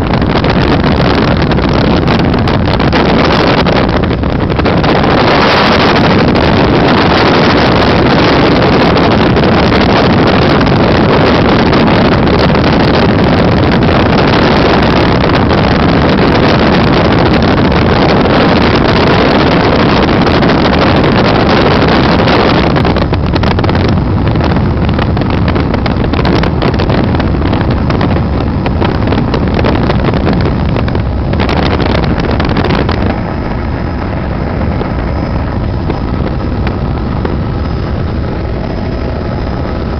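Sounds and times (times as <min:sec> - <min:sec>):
wind buffeting microphone: 0:00.0 - 0:39.9
helicopter engine and rotor: 0:31.0 - 0:39.9.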